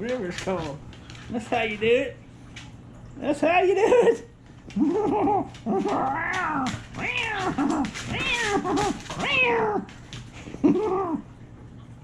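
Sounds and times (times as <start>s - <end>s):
cat meowing: 5.8s - 9.9s.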